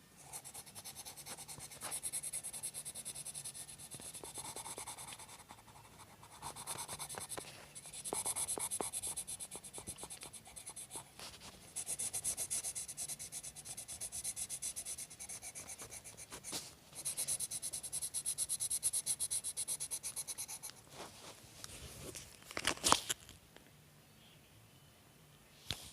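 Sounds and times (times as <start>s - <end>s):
drawing tool rubbing on paper: 0.3s - 20.7s.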